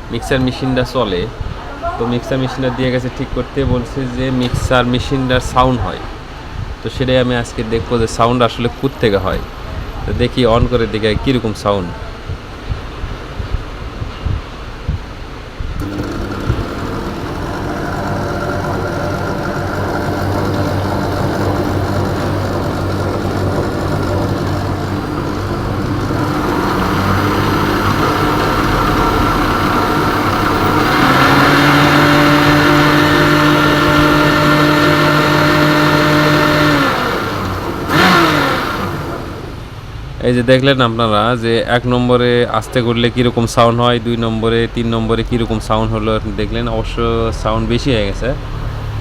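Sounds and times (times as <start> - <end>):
mixer grinder motor running: 15.8 - 39.8.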